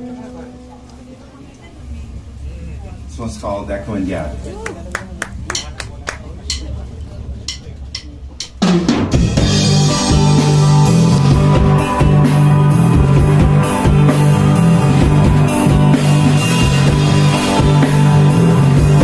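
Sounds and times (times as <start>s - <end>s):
rock band playing: 8.4s - 19.0s.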